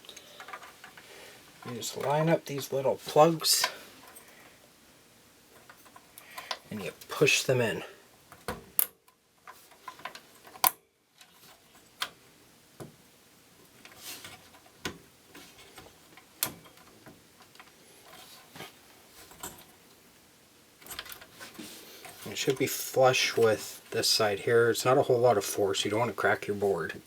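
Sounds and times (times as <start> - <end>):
plastic handling noise: 0.0 - 4.6, 20.8 - 24.2.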